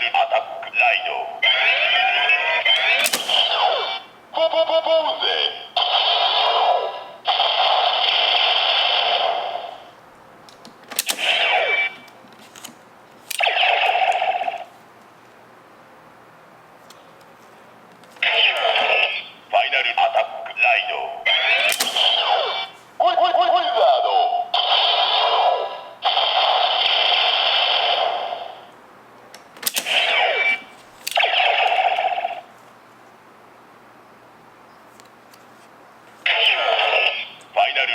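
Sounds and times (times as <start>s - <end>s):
toy belt electronic sound effects: 1.4s - 4.1s, 11.0s - 12.1s, 13.3s - 14.7s, 21.2s - 25.6s, 29.7s - 32.5s.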